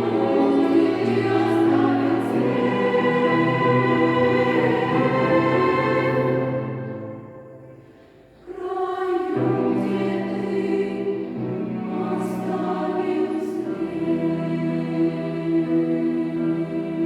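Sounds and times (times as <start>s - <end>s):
children's choir singing: 0.0s - 17.0s.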